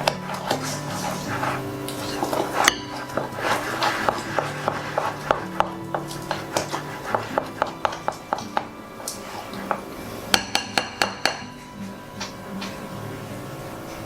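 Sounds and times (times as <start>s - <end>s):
utensil stirring in a jar: 0.0s - 10.0s.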